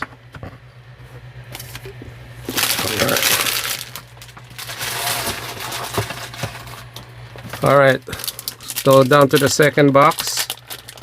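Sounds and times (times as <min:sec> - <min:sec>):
plastic packaging crinkling: 0:01.6 - 0:11.0.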